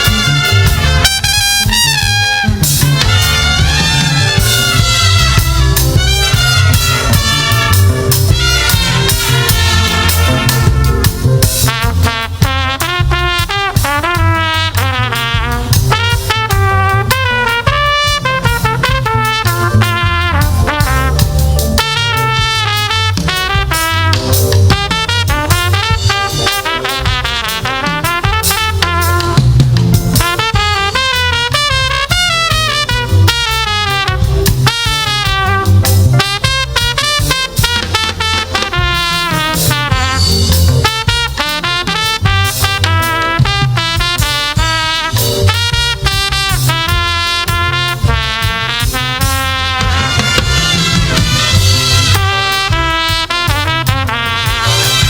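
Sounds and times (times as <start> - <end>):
bass: 0.0 - 55.0
brass melody: 0.0 - 55.0
drums: 0.0 - 55.0.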